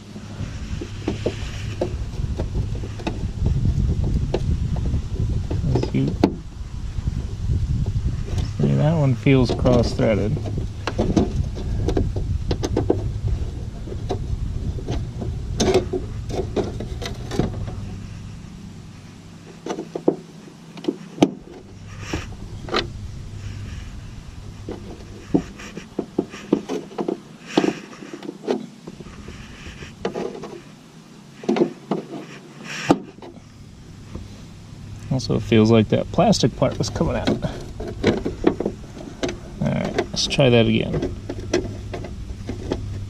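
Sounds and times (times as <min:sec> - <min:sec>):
low rumble: 0:00.0 - 0:19.6, 0:21.4 - 0:26.6.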